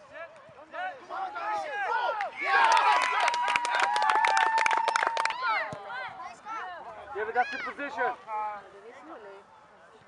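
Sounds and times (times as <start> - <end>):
spectators clapping: 2.2 - 5.6.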